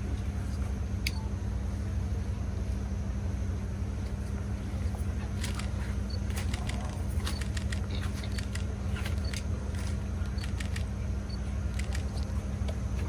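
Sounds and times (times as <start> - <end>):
low hum and rumble: 0.0 - 13.0
faint clicks: 5.4 - 11.0, 11.7 - 12.8.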